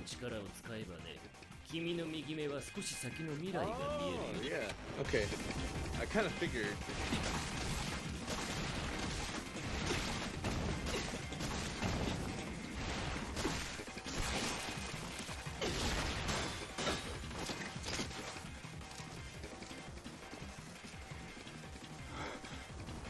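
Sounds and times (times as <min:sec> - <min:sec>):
mechanical clanking and impacts: 0:06.8 - 0:18.9.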